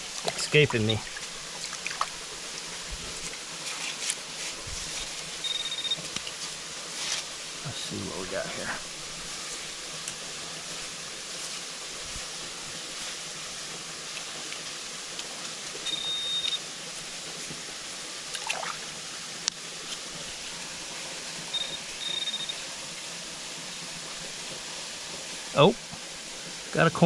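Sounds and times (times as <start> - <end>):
creek water running: 0.0 - 27.0
scrape: 3.6 - 5.2, 6.9 - 7.3
metal detector beeping: 5.4 - 6.1, 15.8 - 16.6, 21.5 - 22.6.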